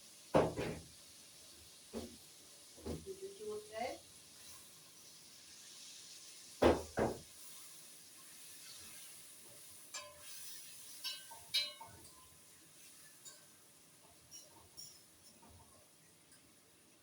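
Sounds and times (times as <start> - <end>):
chicken sizzling in a pot: 0.0 - 17.0
utensil clinking against pot: 11.0 - 12.3, 14.2 - 15.6.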